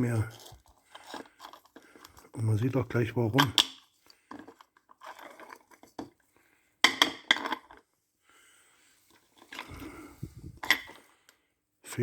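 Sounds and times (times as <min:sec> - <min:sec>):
small metal parts clattering: 0:00.0 - 0:02.5, 0:03.4 - 0:06.2, 0:06.9 - 0:07.8.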